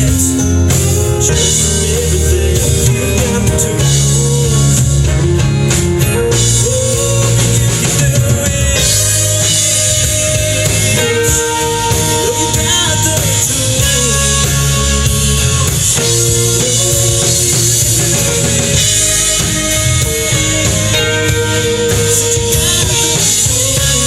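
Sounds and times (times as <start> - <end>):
bass guitar: 0.0 - 24.0
drum kit: 0.0 - 24.0
lead guitar bending notes: 0.0 - 24.0.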